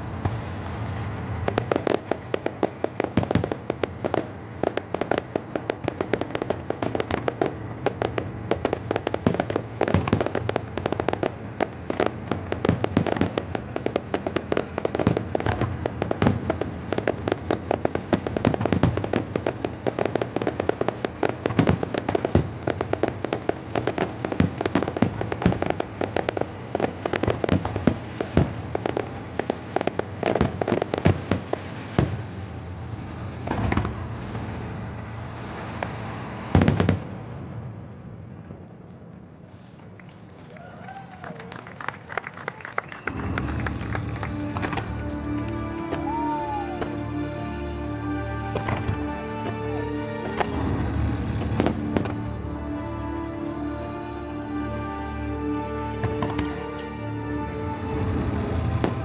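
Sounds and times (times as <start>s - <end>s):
fireworks bangs and booms: 0.0s - 38.6s, 43.0s - 59.0s.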